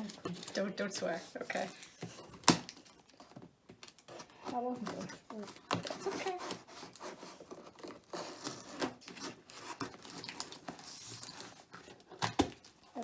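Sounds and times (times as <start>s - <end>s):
cardboard packaging tearing: 3.8s - 13.0s.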